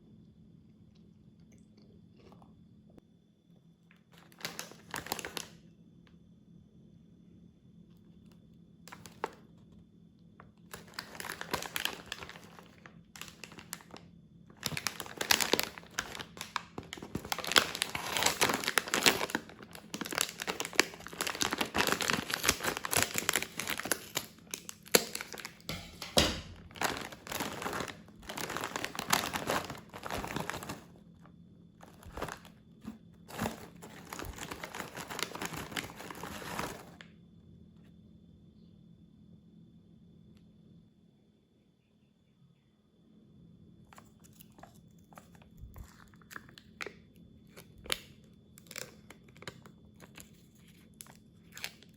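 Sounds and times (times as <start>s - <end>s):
plastic wrapper crinkling: 4.1s - 5.6s, 8.9s - 9.4s, 10.7s - 31.0s, 31.8s - 37.0s, 47.5s - 51.9s.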